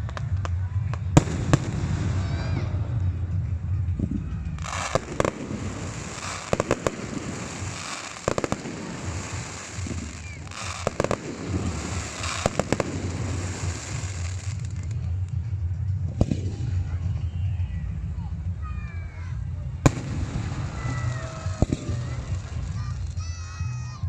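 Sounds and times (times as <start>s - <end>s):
fireworks crackling: 0.0s - 15.4s, 19.8s - 24.0s
low rumble: 0.0s - 24.0s
fireworks bangs: 4.5s - 15.0s, 19.8s - 23.2s.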